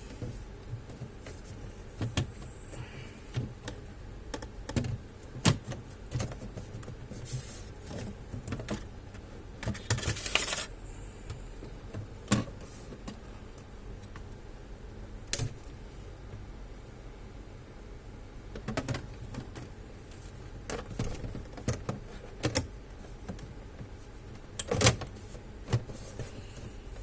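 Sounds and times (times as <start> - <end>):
clicks and knocks of computer parts: 2.0 - 2.4, 3.3 - 7.1, 7.8 - 10.7, 11.9 - 13.2, 15.3 - 15.7, 18.6 - 23.9, 24.5 - 26.4.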